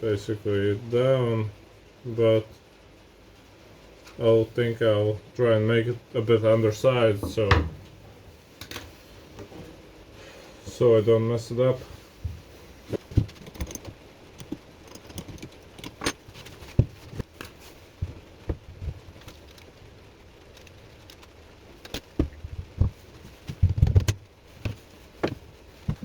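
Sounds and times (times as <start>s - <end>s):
heavy thumps: 7.0s - 8.3s, 12.2s - 17.3s, 22.1s - 26.0s
objects knocking and clicking: 12.3s - 19.7s, 20.5s - 26.0s.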